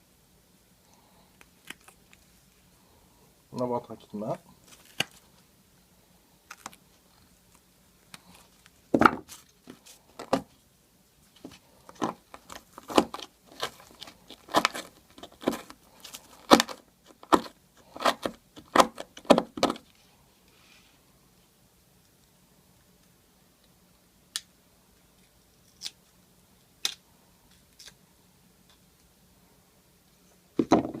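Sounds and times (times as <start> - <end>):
tool scraping hardened glue: 12.8 - 19.7.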